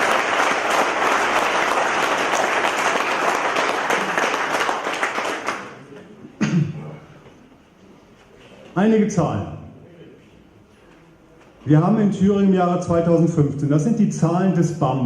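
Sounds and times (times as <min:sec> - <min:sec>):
crowd applauding: 0:00.0 - 0:05.9.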